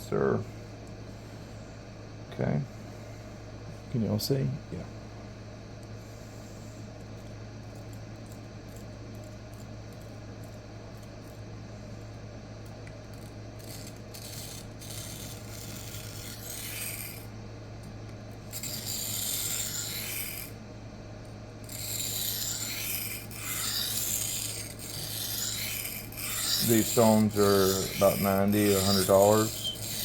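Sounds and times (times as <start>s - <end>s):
steady low hum: 0.0s - 30.0s
knife scraping on sharpening plate: 21.7s - 30.0s.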